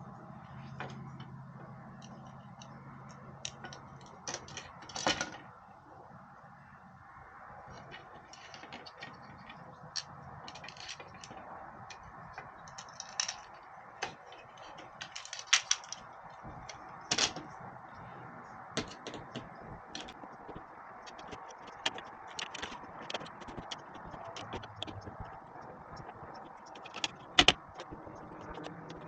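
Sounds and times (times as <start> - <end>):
small parts and tools clicking: 7.7 - 18.0, 18.7 - 29.0.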